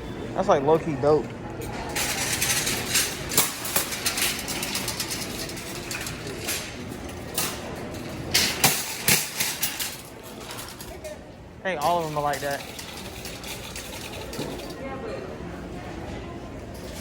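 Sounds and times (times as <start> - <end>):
shopping cart rattling on hard floor: 1.9 - 11.0, 11.8 - 14.8.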